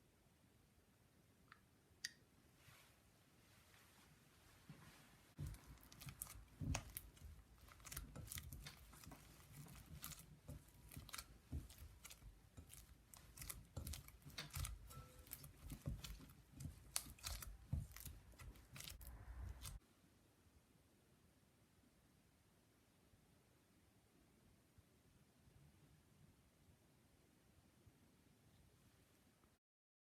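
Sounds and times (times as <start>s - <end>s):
hands handling objects: 4.6s - 19.8s.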